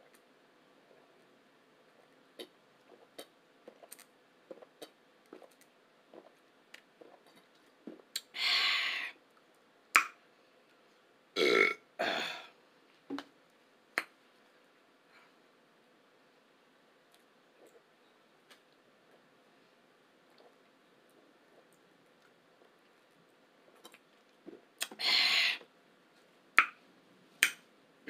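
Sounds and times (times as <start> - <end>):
person burping: 11.4 - 12.5.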